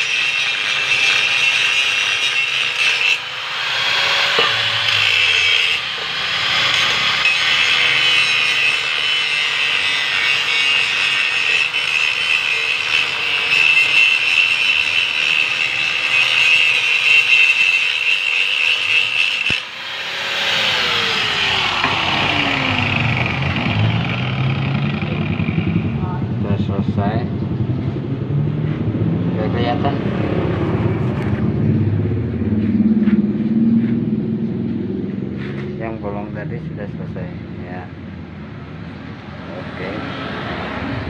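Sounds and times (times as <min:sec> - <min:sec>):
grinder grinding metal: 0:00.0 - 0:26.2.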